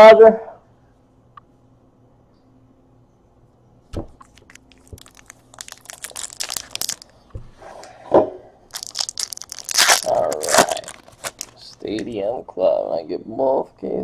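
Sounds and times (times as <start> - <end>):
wrappers crinkling and tearing: 4.2 - 7.2, 8.7 - 12.2.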